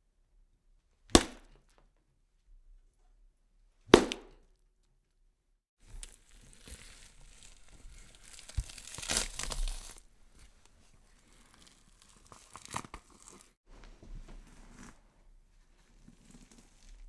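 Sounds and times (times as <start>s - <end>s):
sharp cracks: 1.2s - 1.5s
tearing and crackling: 5.9s - 13.6s.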